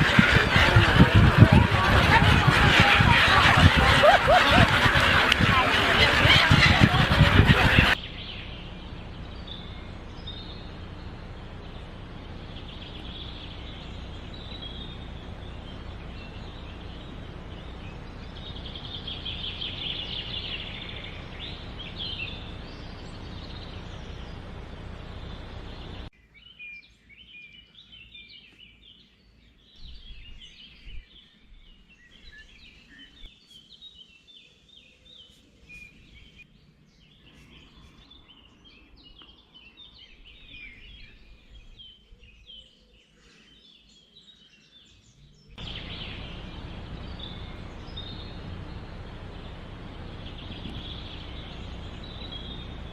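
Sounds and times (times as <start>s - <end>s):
steady background noise: 0.0s - 26.1s, 45.4s - 52.9s
birds calling: 0.0s - 52.9s.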